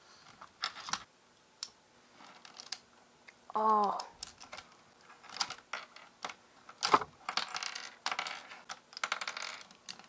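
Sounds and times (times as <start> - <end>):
plastic puzzle cube clicking: 5.4 - 10.0.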